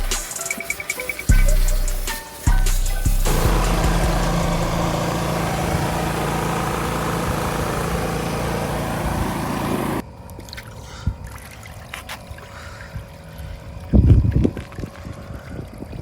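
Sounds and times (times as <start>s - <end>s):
loud hissing rush: 1.6s - 10.0s
machine motor humming: 2.7s - 10.0s.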